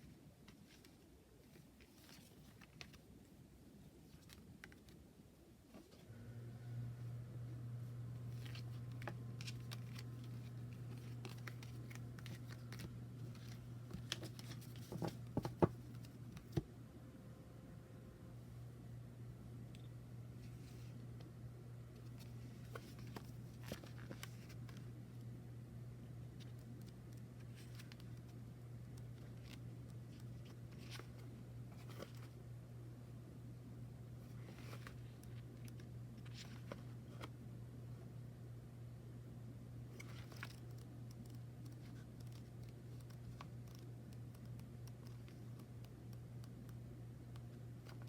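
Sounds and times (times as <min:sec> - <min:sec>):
low steady hum: 0:00.0 - 0:48.0
cards rustling: 0:08.2 - 0:16.6, 0:22.0 - 0:24.9, 0:26.4 - 0:32.4, 0:39.9 - 0:48.0.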